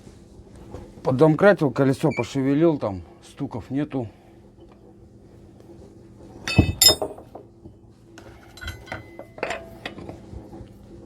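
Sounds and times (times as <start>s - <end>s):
metal tools clinking: 6.5s - 7.2s.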